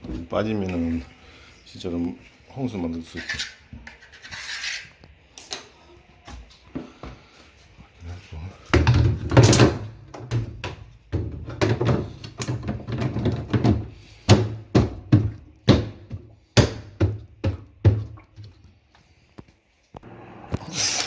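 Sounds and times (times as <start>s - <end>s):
plastic knocks and thuds: 8.7s - 18.5s.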